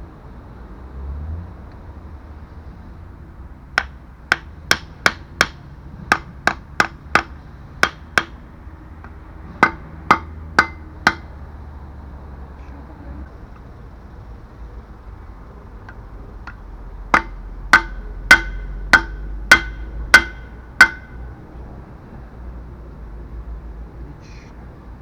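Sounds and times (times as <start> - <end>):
hammer striking metal: 3.8 - 8.4, 9.0 - 11.3, 15.9 - 21.2.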